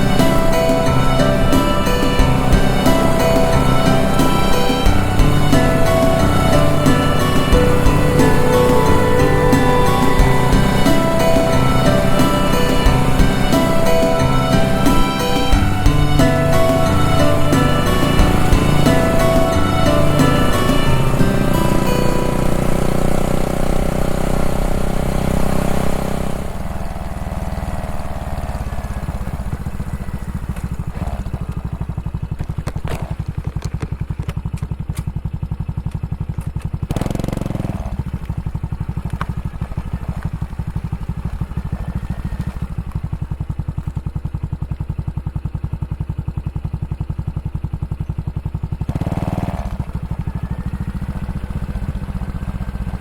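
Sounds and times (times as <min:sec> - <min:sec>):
background music: 0:00.0 - 0:28.2
motorcycle engine running: 0:00.0 - 0:53.0.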